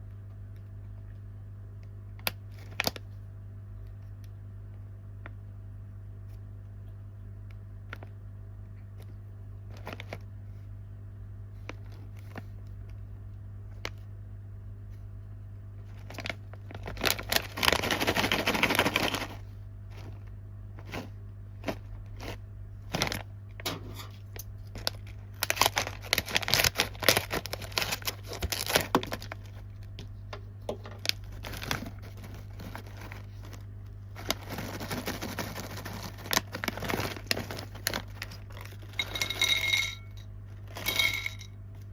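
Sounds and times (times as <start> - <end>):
steady low hum: 0.0 - 41.9
plastic packaging crinkling: 2.5 - 3.1, 9.6 - 10.4, 15.7 - 41.5.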